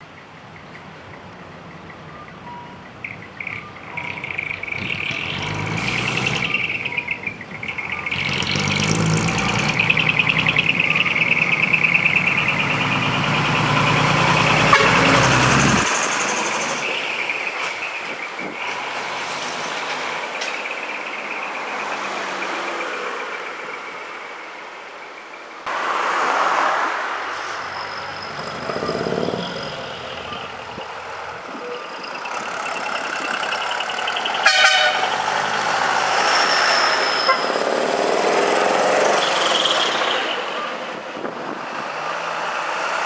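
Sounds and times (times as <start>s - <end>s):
diesel engines revving: 0.0s - 24.6s, 25.6s - 43.0s
siren wailing: 6.2s - 16.9s.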